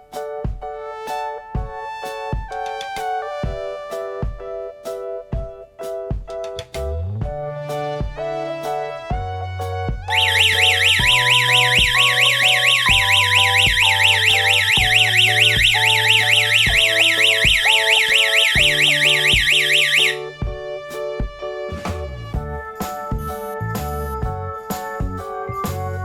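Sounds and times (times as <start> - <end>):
background music: 0.0 - 26.0
warbling alarm siren: 10.1 - 20.3.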